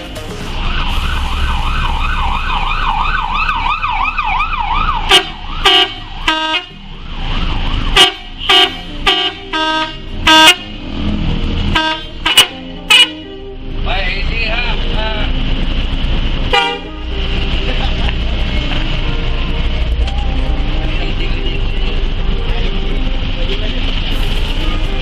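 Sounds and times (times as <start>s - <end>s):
musical bus horn: 5.0s - 6.9s, 7.8s - 14.8s, 16.4s - 19.8s.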